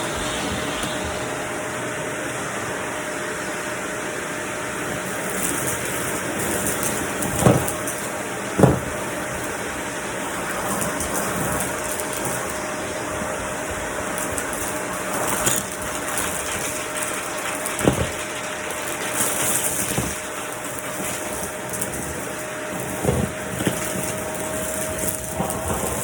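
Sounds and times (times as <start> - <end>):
vacuum cleaner running: 0.0 - 26.0
sharp knocks: 8.6 - 9.1.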